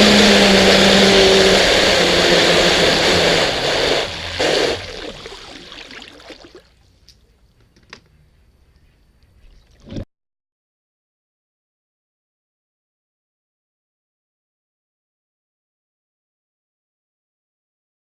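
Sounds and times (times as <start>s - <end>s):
electric boat motor running: 0.0s - 5.5s
water rushing past hull: 0.0s - 6.8s.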